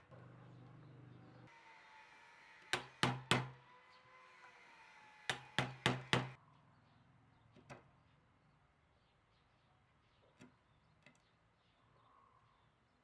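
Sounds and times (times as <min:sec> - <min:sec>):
knocks on hollow wood: 0:02.7 - 0:03.6, 0:05.3 - 0:06.4.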